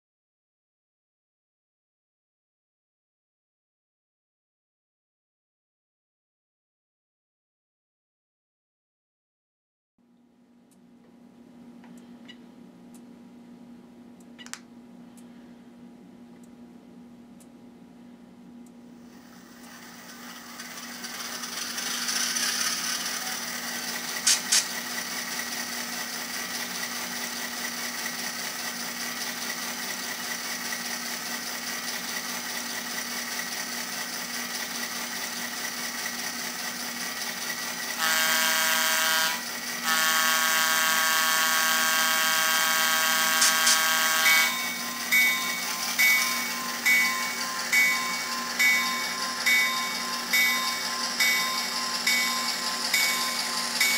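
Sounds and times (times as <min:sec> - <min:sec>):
diesel engine sound idling: 0:19.4 - 0:53.9
locomotive air horn blasts: 0:38.0 - 0:45.0
bell-like dings: 0:44.3 - 0:53.9.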